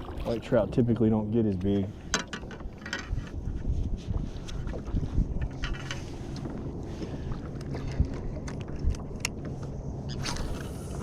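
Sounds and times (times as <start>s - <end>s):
water around kayak: 0.0s - 11.0s
wind on microphone: 2.6s - 11.0s.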